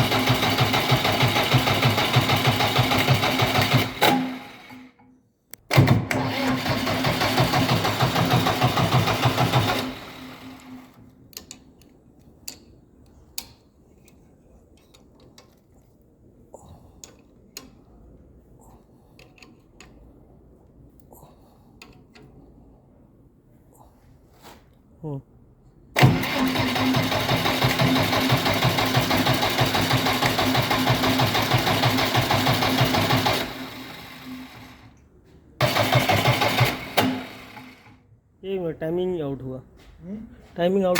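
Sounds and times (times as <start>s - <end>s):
misfiring diesel engine running: 0.0s - 4.8s, 5.8s - 10.9s, 26.0s - 34.8s, 35.6s - 37.9s.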